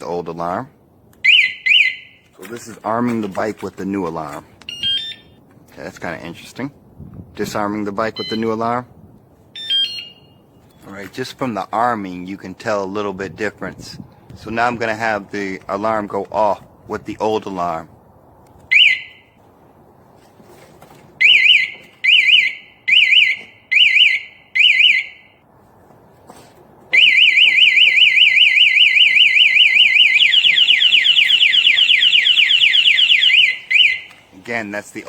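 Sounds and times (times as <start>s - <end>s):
motorbike alarm siren warbling: 1.2s - 2.2s, 4.7s - 5.4s, 9.6s - 10.4s, 18.7s - 19.4s, 21.2s - 25.4s, 26.9s - 34.1s.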